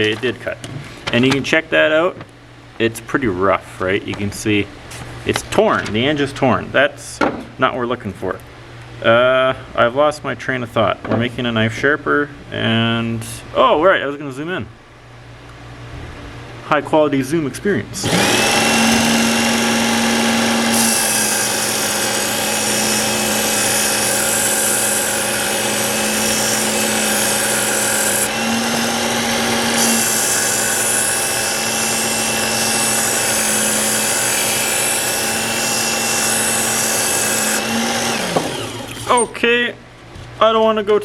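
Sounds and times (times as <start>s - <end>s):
belt sharpener motor hum: 18.0s - 39.2s.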